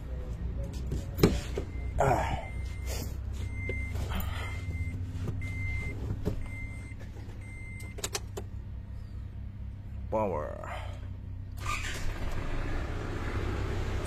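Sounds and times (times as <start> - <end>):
car warning chime beeping: 1.5 - 8.4
steady low rumble: 1.7 - 11.6.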